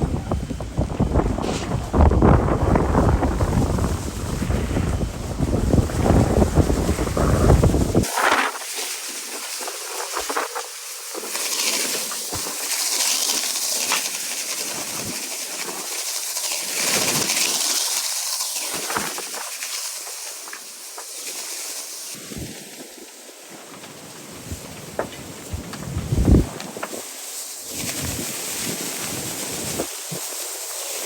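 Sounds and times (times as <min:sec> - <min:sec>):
wind buffeting microphone: 0:00.0 - 0:08.4, 0:24.4 - 0:27.1
fire roaring: 0:00.0 - 0:08.7, 0:24.4 - 0:30.3
fire crackling and popping: 0:00.0 - 0:08.8.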